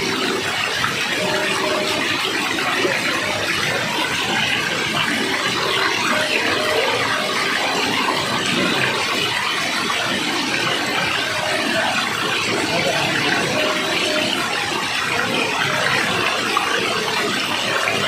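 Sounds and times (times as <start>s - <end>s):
flowing water rushing: 0.0s - 18.0s.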